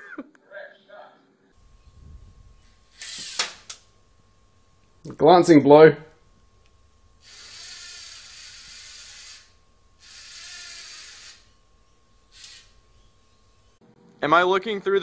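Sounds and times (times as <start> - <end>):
robot motors and plastic gears: 2.9 - 3.8, 7.2 - 11.6, 12.2 - 12.8.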